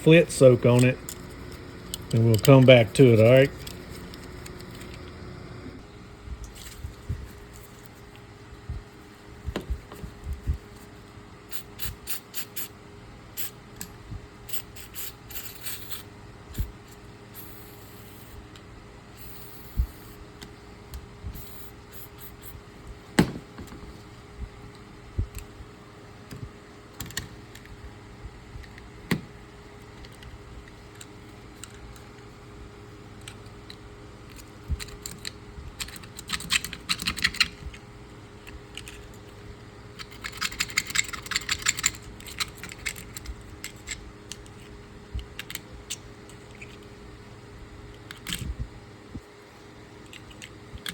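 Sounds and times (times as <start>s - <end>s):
faint steady hum: 0.0s - 50.9s.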